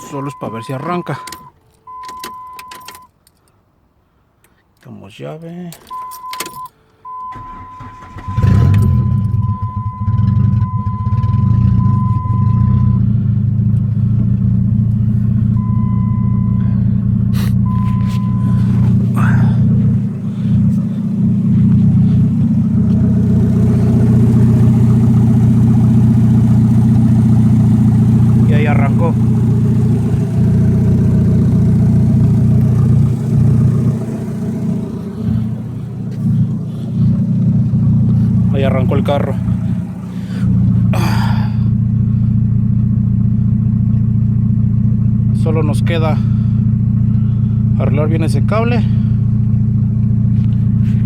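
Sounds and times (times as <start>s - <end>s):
steady high beep: 0.0s - 2.7s, 15.6s - 16.8s, 17.6s - 18.7s
car engine running: 7.1s - 51.0s.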